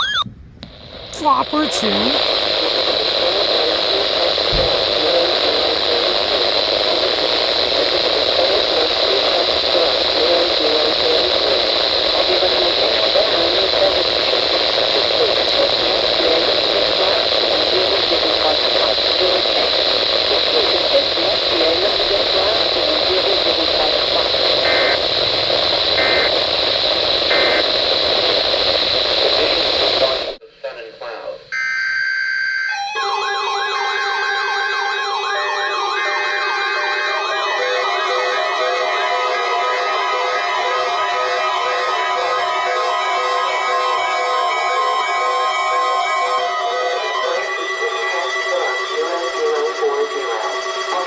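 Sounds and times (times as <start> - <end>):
two-tone data bursts: 0.0 - 0.2, 27.3 - 27.7
radio static hiss: 0.8 - 31.5, 46.9 - 51.0
faint voice: 1.1 - 2.3.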